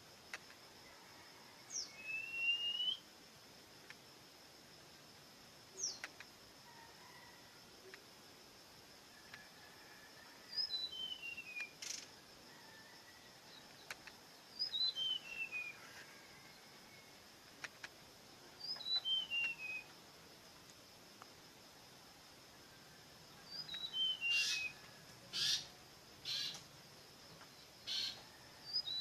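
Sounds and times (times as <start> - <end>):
songbird whistling falling notes: 14.6 - 15.8, 18.6 - 19.9, 23.6 - 24.7.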